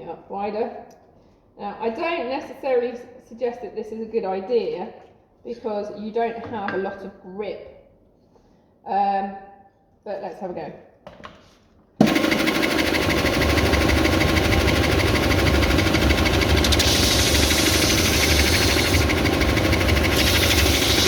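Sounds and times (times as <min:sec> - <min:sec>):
belt sander running: 0:12.0 - 0:21.0
wood sanding hiss: 0:15.2 - 0:21.0.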